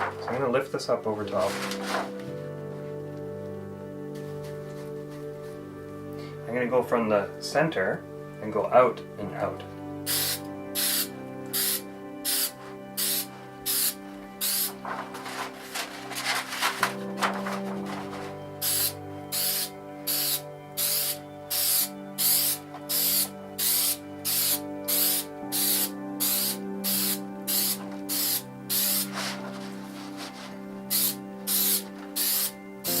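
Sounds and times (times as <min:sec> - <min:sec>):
aerosol can spraying: 0:10.1 - 0:16.9, 0:18.6 - 0:30.3, 0:30.9 - 0:33.0.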